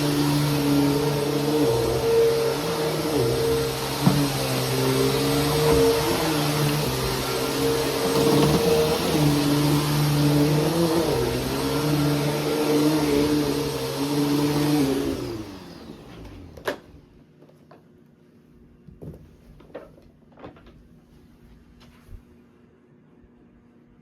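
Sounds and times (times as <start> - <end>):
vacuum cleaner motor running: 0.0 - 17.4.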